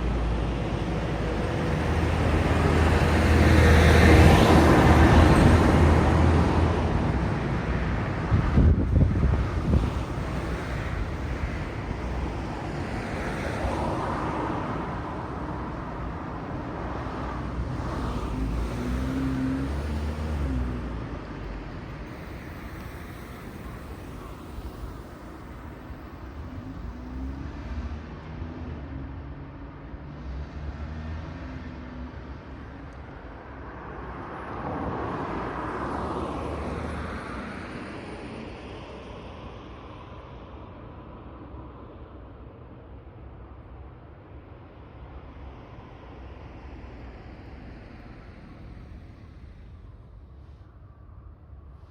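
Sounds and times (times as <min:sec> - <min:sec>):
vehicle passing by: 0:00.0 - 0:16.1, 0:16.7 - 0:29.4
road traffic rumble: 0:00.0 - 0:51.9
wind buffeting microphone: 0:04.7 - 0:15.7
vehicle passing: 0:17.0 - 0:26.1.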